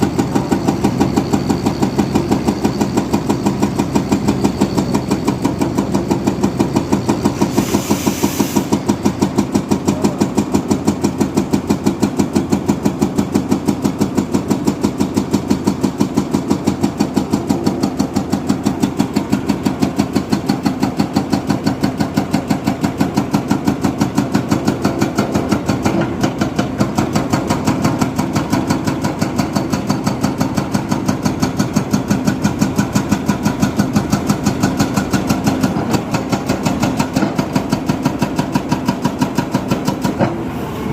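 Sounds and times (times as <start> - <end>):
diesel engine pulsing: 0.0 - 40.9
short hiss: 7.4 - 8.8.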